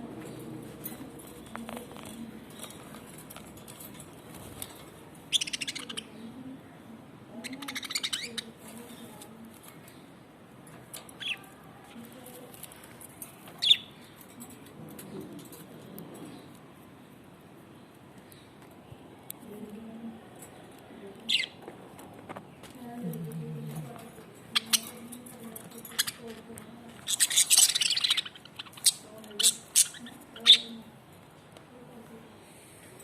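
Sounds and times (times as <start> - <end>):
budgerigars chirping: 5.3 - 6.0, 27.0 - 30.8.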